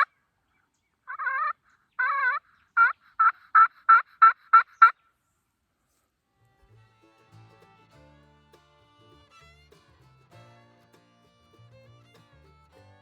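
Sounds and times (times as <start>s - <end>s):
wild turkey calling: 1.1s - 5.1s.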